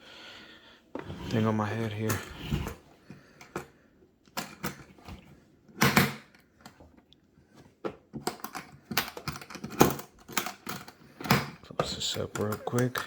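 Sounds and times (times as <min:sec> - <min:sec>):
plastic toolbox clicks and knocks: 0:04.3 - 0:06.9, 0:07.8 - 0:13.0.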